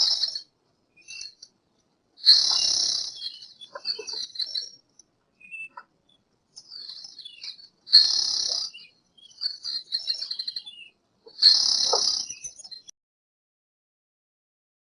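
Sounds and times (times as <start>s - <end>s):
bird-like chirping: 0.0s - 1.5s, 2.2s - 12.9s
harsh calls: 2.2s - 4.4s, 11.3s - 12.4s.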